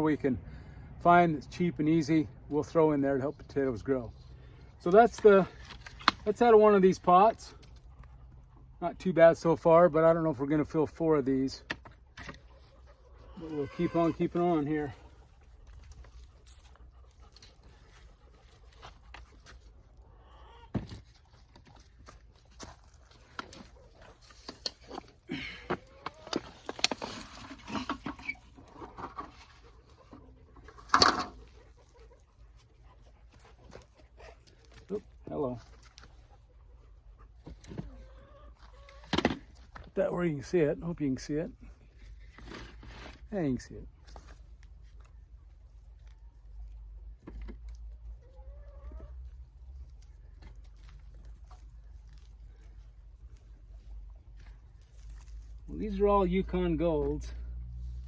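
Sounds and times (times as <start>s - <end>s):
hands digging through soil: 9.4s - 58.0s
chicken clucking: 37.8s - 39.0s, 48.2s - 49.2s.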